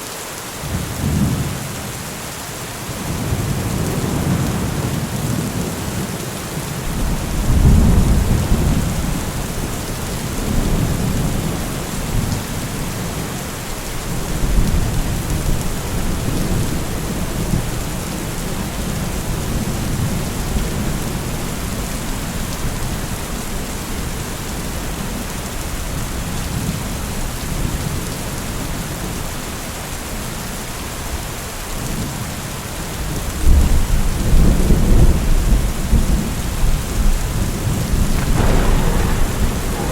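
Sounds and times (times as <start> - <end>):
heavy rain falling: 0.0 - 39.9
thunder rumbling: 3.2 - 12.8, 33.5 - 39.9.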